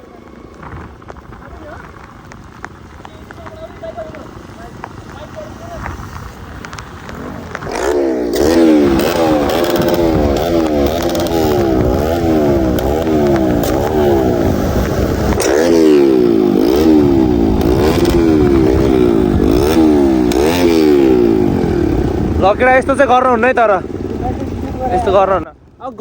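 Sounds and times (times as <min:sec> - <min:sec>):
exhaust cracks: 0:00.0 - 0:26.0
motorcycle engine revving: 0:00.0 - 0:26.0.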